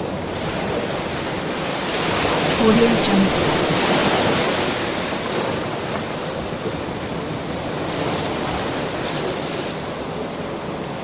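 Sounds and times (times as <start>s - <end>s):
ocean waves washing in: 2.6s - 6.4s.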